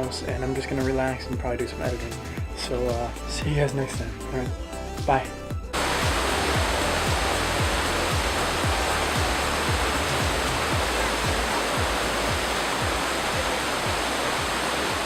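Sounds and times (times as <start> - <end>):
background music with kick drum: 0.0 - 15.0
falling water rushing: 5.8 - 15.0.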